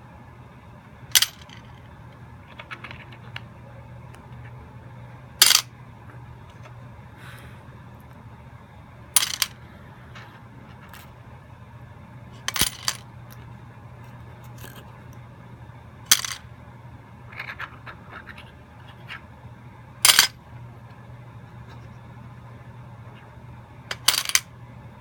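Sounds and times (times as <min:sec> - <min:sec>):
steady low hum: 0:00.0 - 0:25.0
metal objects clinking into box: 0:20.1 - 0:20.3, 0:23.9 - 0:24.4.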